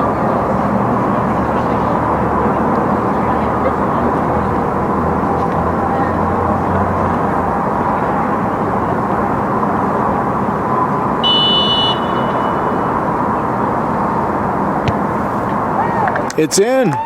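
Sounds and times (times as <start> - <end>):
outdoor rushing background noise: 0.0 - 16.9
referee's whistle blast: 11.2 - 13.0.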